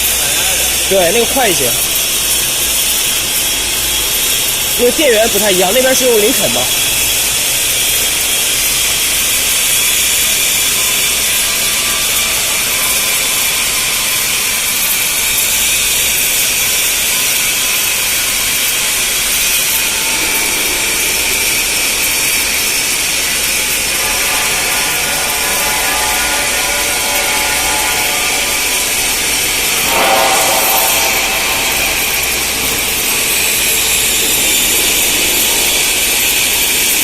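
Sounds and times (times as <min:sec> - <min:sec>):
welding machine hissing: 0:00.0 - 0:37.0.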